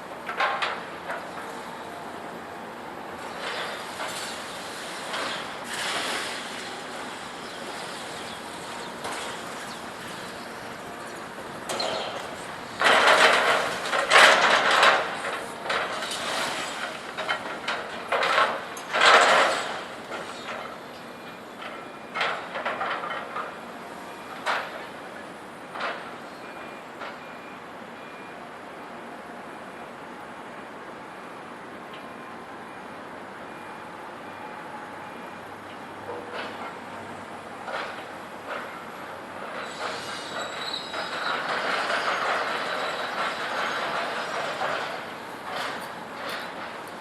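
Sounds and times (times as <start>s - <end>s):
machinery rumbling: 3.3s - 20.6s
scrap metal banging and crashing: 11.7s - 19.8s.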